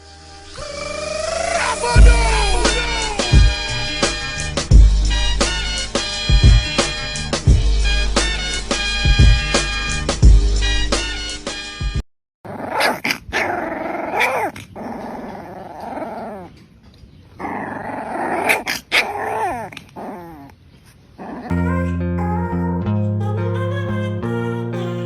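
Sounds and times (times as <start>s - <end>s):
dog growling: 0.6s - 4.3s, 12.5s - 16.6s, 17.4s - 20.6s, 21.2s - 21.6s.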